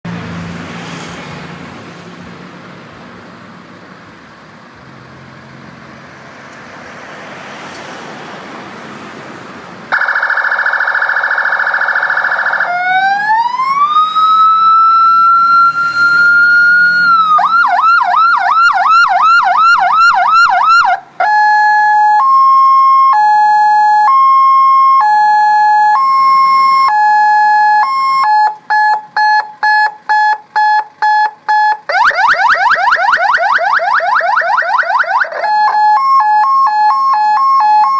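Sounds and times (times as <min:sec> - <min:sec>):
electronic siren cycling tones: 0:09.9 - 0:37.9.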